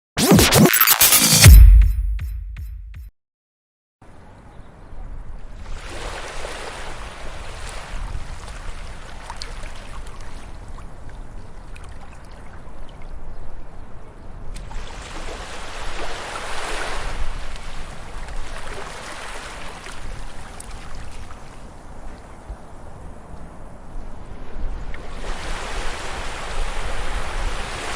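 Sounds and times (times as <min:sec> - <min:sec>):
water rushing: 0:14.6 - 0:22.3, 0:24.9 - 0:27.9.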